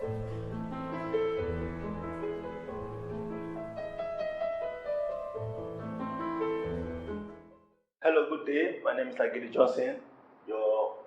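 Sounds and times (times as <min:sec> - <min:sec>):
calm keyboard music: 0:00.0 - 0:07.8.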